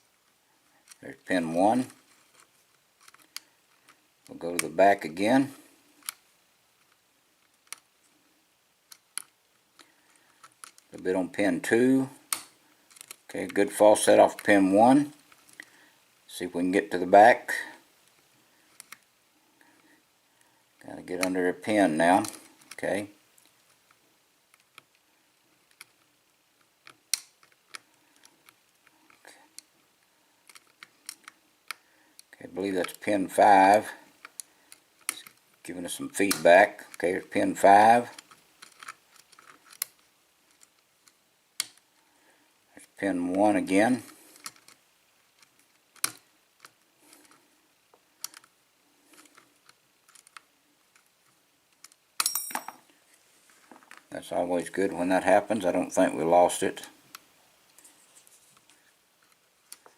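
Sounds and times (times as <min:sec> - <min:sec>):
lock pick clicks and scraping: 0:01.9 - 0:04.0, 0:08.9 - 0:10.9, 0:12.3 - 0:13.3, 0:23.4 - 0:29.7, 0:30.4 - 0:33.1, 0:37.7 - 0:41.8, 0:44.2 - 0:47.5, 0:48.2 - 0:52.9.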